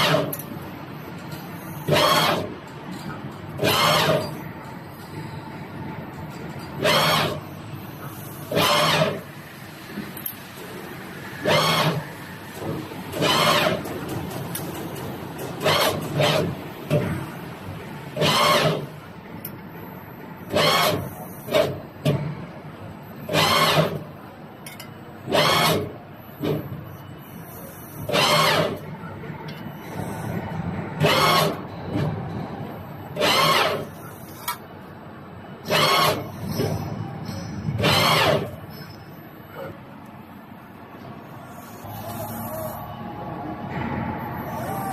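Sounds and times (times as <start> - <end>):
machine hum: 35.0 - 44.9.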